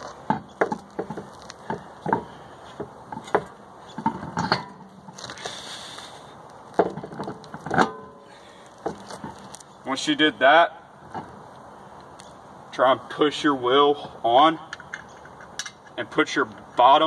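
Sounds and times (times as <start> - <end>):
wheel knocks and clunks: 0.0 - 5.6, 6.6 - 9.8.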